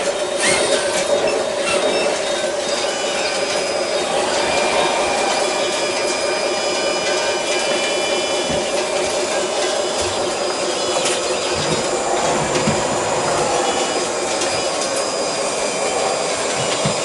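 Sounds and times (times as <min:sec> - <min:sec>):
small electric motors whining: 0:00.2 - 0:17.0.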